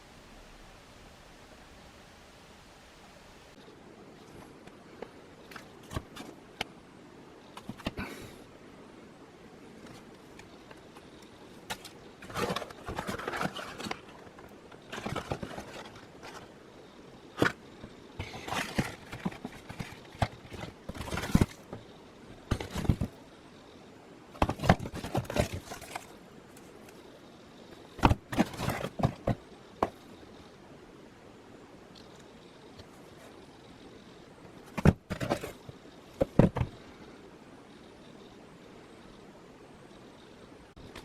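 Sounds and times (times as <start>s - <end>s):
objects being handled: 4.2s - 6.7s, 7.5s - 8.4s, 9.7s - 16.6s, 17.2s - 23.2s, 24.3s - 27.1s, 27.7s - 30.1s, 34.4s - 36.9s.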